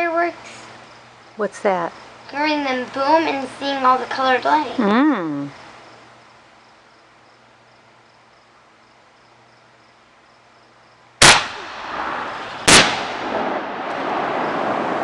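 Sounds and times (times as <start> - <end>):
fireworks booming: 11.2 - 15.0.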